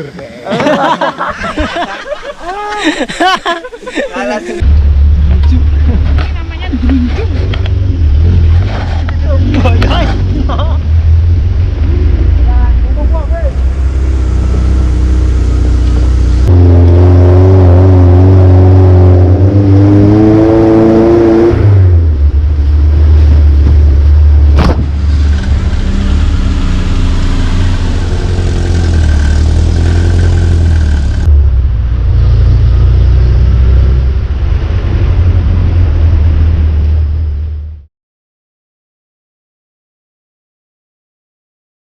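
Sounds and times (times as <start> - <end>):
jeep engine running hard: 21.1 - 37.4.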